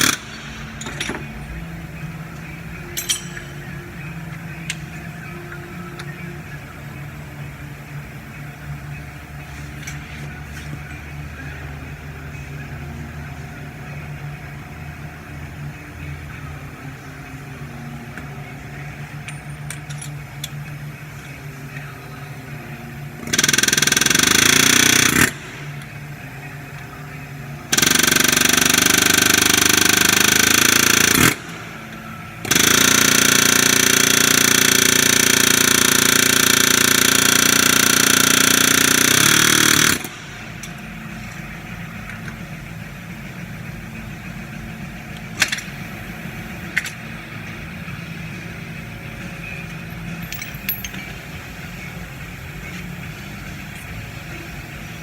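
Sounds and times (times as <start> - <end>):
pneumatic air hammer rattling: 0.0 - 1.6, 2.9 - 3.7, 23.2 - 25.8, 27.7 - 31.6, 32.4 - 41.4.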